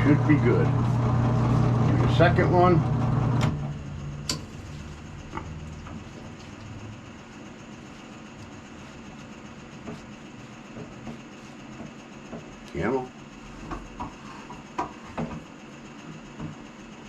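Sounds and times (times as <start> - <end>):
drill press motor humming: 0.8 - 10.6.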